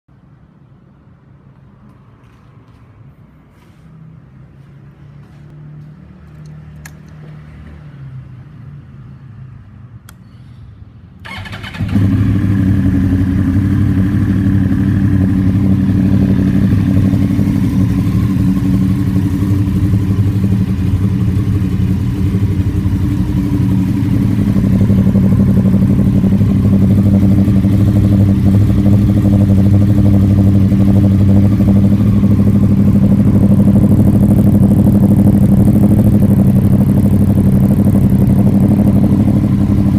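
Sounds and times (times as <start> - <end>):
motorcycle engine idling: 11.2 - 39.9.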